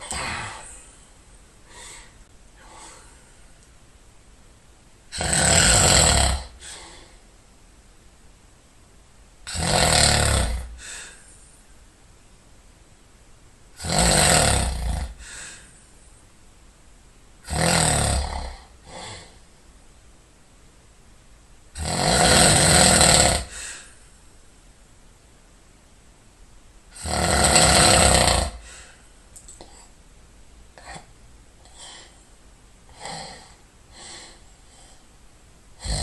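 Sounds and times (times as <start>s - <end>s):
person snoring loudly: 0.0s - 0.8s, 5.1s - 7.0s, 9.5s - 11.1s, 13.8s - 15.4s, 17.4s - 19.4s, 21.8s - 23.9s, 26.9s - 28.7s, 32.9s - 34.4s, 35.8s - 36.0s.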